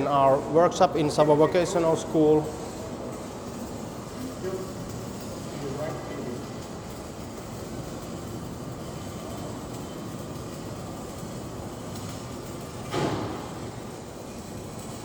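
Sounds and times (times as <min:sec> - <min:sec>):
exhibition hall crowd din: 0:00.0 - 0:12.4.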